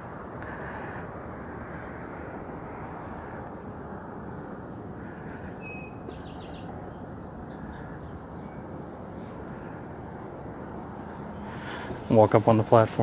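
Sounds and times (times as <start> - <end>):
wind-like outdoor rumble: 0.0 - 13.0
small songbirds chirping: 3.1 - 13.0.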